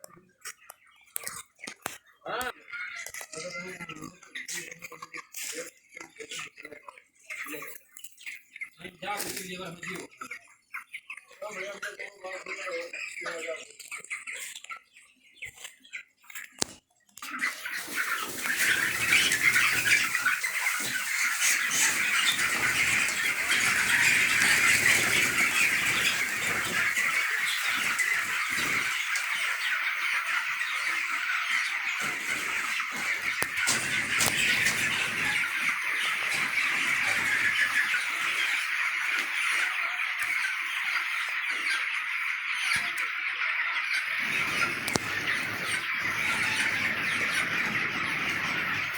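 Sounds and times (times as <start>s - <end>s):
flock of chickens calling: 0.0s - 48.9s
wings flapping: 17.4s - 29.8s, 32.0s - 37.8s.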